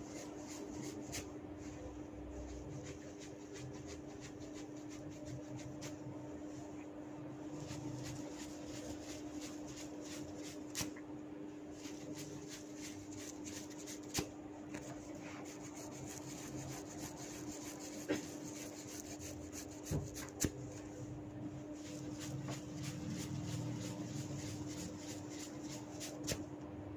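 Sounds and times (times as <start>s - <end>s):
steady low hum: 0.0s - 26.9s
hands rubbing scalp: 2.6s - 6.1s, 7.6s - 10.9s, 11.7s - 20.9s, 21.7s - 26.4s.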